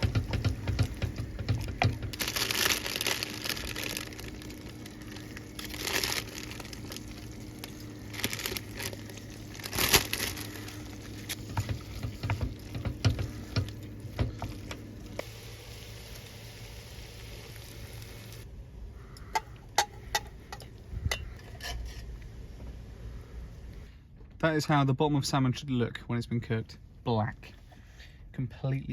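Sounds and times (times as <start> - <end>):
food and utensils rustling and clattering: 0.0 - 15.2, 19.2 - 22.8
steady hum: 0.0 - 24.1.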